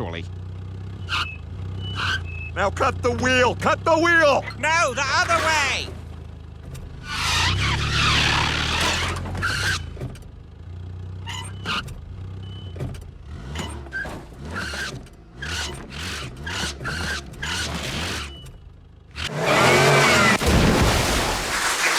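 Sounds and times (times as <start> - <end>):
car engine running: 0.0 - 20.4
short knocks and squeaks: 0.8 - 2.6, 5.2 - 10.4, 11.1 - 20.4.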